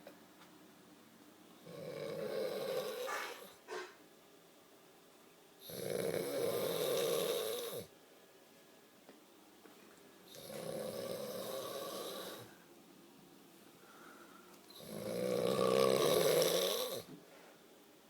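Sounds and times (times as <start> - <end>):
person snoring: 1.6 - 3.5, 5.7 - 7.9, 10.3 - 12.6, 14.7 - 17.1.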